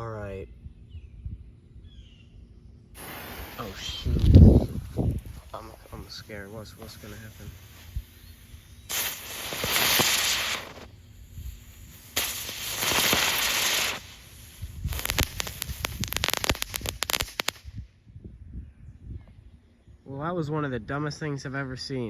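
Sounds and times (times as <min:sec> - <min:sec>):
firework hissing: 0:03.0 - 0:17.8
firework crackling pops: 0:03.0 - 0:17.9.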